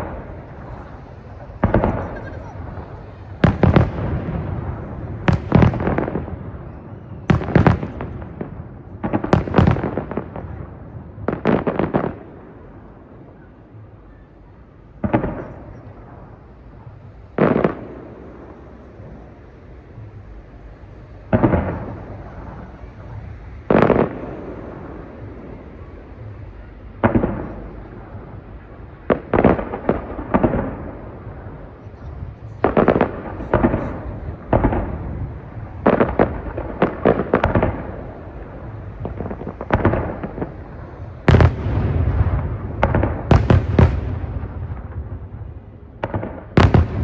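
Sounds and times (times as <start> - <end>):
fireworks booming: 0.0 - 47.0.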